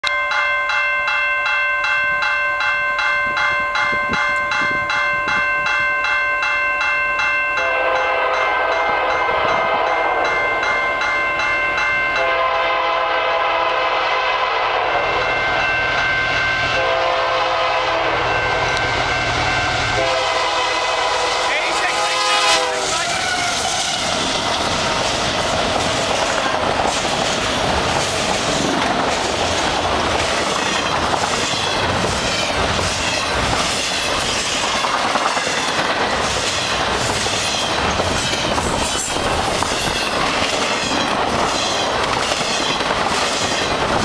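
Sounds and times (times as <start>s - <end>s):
bell ringing rapidly: 0.1s - 12.4s
locomotive air horn chord: 7.6s - 10.1s, 12.2s - 15.2s, 16.6s - 24.1s
train wheels rumbling and rattling: 14.8s - 44.0s.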